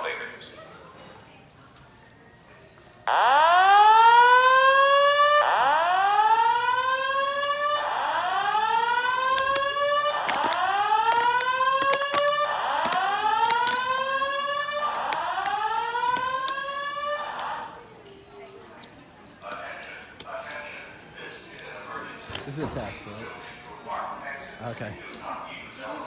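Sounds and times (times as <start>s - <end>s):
fire alarm whooping: 3.0s - 17.8s.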